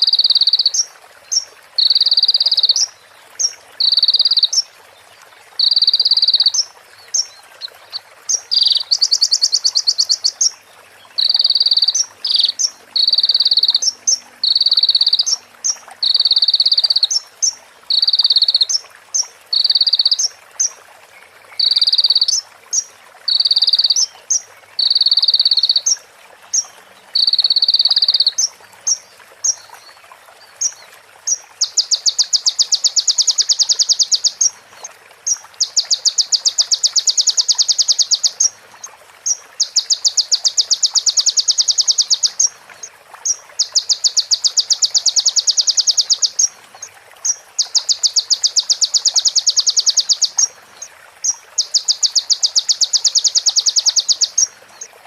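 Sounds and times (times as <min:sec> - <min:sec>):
bird singing buzzy trills: 0:00.0 - 0:04.7, 0:05.6 - 0:10.6, 0:11.2 - 0:18.8, 0:19.5 - 0:20.7, 0:30.6 - 0:34.5, 0:35.2 - 0:54.9.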